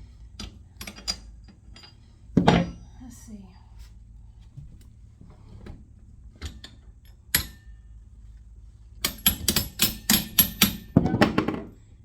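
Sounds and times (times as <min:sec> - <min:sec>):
hammer striking metal axle: 0:06.4 - 0:07.8, 0:09.0 - 0:11.4.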